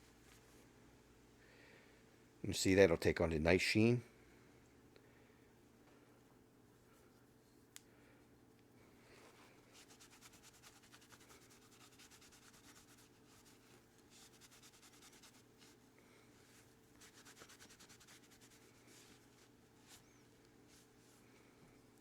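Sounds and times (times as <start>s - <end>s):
cloth rubbing quickly: 9.3s - 21.0s.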